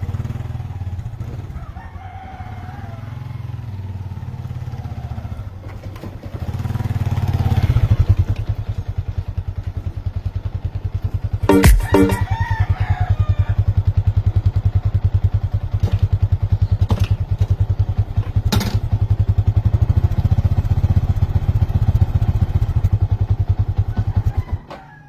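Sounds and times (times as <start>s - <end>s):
motorcycle engine idling: 7.8s - 11.4s, 13.5s - 24.2s.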